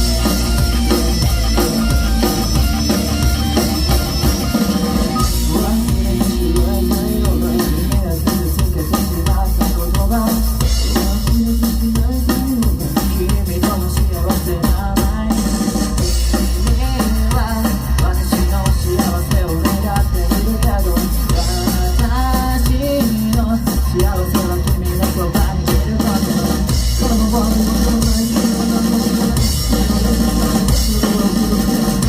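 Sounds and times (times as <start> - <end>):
bass drum and snare: 0.0 - 32.0
live band playing: 0.0 - 32.0.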